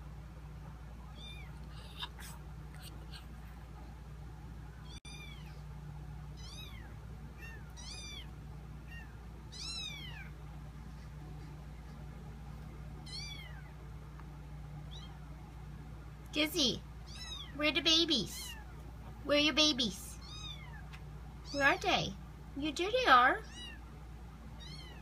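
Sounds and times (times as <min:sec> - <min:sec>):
kittens mewing: 0:01.1 - 0:03.6, 0:04.8 - 0:05.6, 0:06.4 - 0:10.4, 0:13.0 - 0:13.8, 0:17.0 - 0:17.6, 0:20.2 - 0:21.6.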